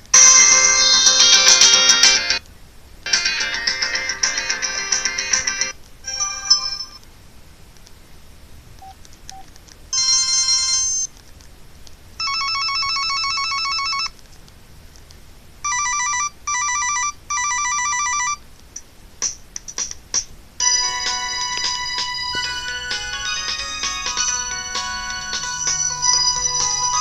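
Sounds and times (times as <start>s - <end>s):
pulsed ringtone bursts: 0.2s - 2.4s, 12.2s - 14.1s, 15.7s - 18.4s, 20.6s - 27.0s
rapid trilling ringtone: 0.2s - 2.4s, 3.1s - 7.0s, 12.2s - 14.1s, 15.7s - 18.4s, 20.6s - 27.0s.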